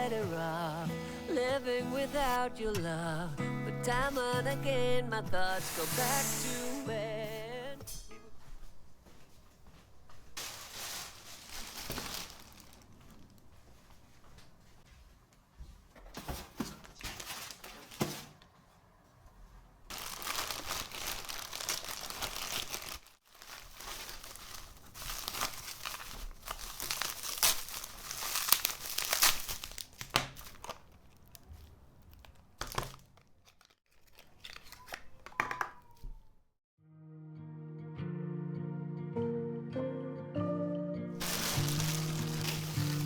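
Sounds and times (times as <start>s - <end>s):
plastic and paper crinkling: 5.4s - 7.6s, 10.3s - 14.0s, 16.1s - 18.6s, 19.9s - 36.3s, 41.2s - 43.0s.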